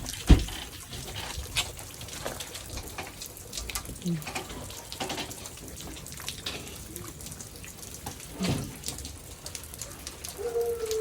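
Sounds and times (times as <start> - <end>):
rain falling: 0.0 - 11.0
water running and dripping: 0.0 - 11.0.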